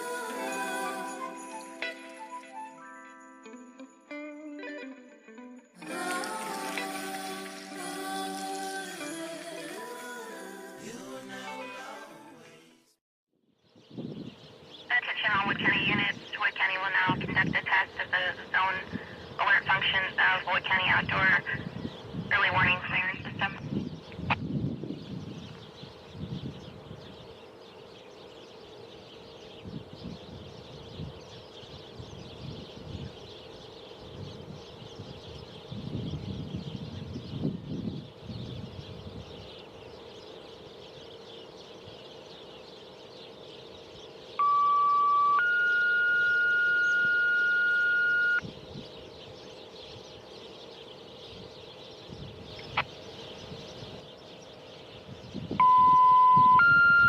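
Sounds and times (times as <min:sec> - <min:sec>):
two-tone radio activation tones: 0:14.9 - 0:21.7, 0:22.3 - 0:23.7, 0:44.4 - 0:48.4, 0:55.6 - 0:57.0.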